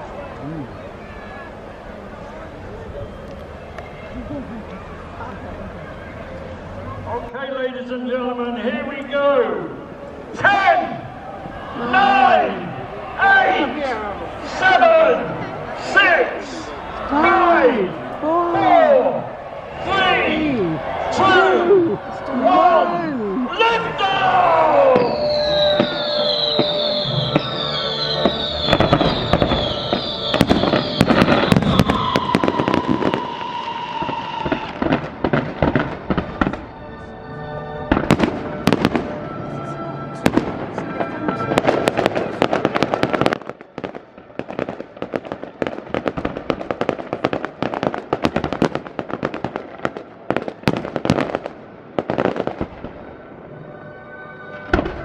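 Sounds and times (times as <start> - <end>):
fireworks bangs and crackles: 24.4 - 36.8, 37.9 - 53.5, 54.6 - 55.0
rockets falling whistles: 24.7 - 36.6.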